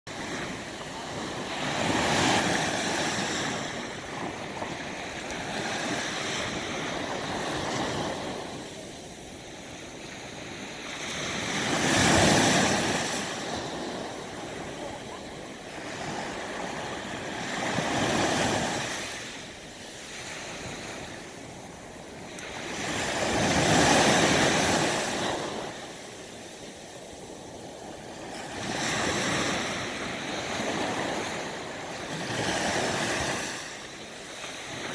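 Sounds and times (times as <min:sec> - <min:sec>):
ocean waves breaking: 0:00.1 - 0:34.9
wind blowing: 0:00.1 - 0:34.9.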